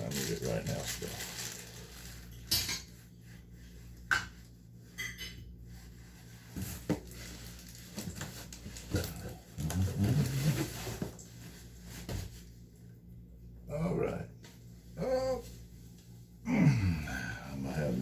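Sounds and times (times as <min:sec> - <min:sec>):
bag rustling: 0:00.0 - 0:02.3, 0:06.6 - 0:12.1.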